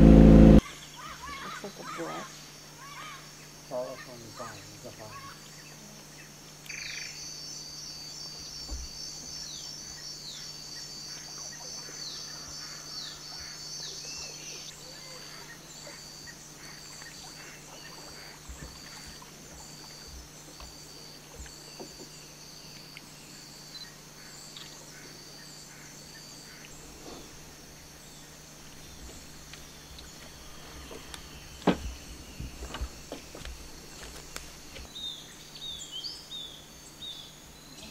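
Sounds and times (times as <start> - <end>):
low steady hum: 0.0 - 0.7
insects droning: 0.0 - 37.9.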